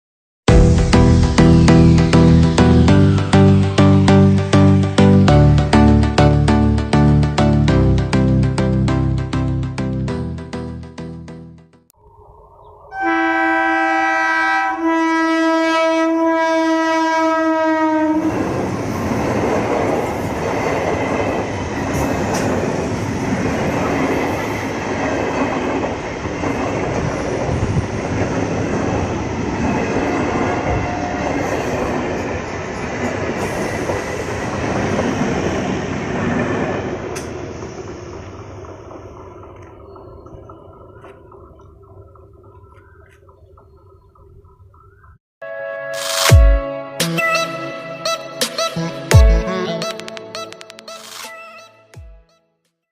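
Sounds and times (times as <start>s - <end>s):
train horn: 12.9s - 18.5s, 30.0s - 31.9s, 45.4s - 51.0s.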